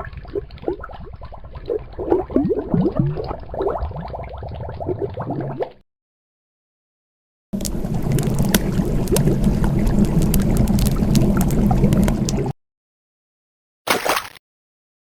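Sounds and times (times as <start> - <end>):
water gurgling and bubbling: 0.0 - 5.8, 7.6 - 12.5.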